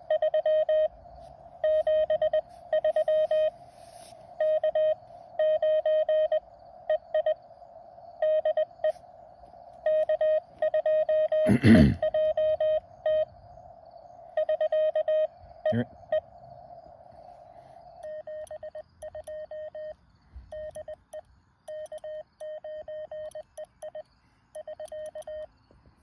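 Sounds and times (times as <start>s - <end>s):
morse code tone: 1.6s - 3.6s, 4.4s - 6.4s, 9.8s - 13.3s, 14.4s - 16.2s, 18.0s - 25.5s.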